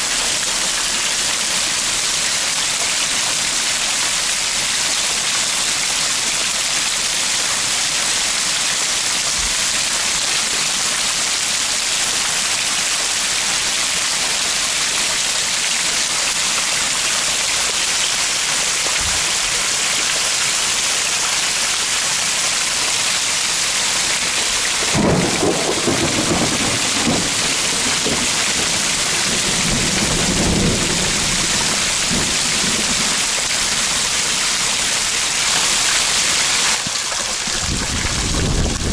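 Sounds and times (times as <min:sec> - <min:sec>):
heavy rain: 0:00.0 - 0:38.9
thunder rumbling: 0:24.8 - 0:34.1, 0:37.5 - 0:38.9.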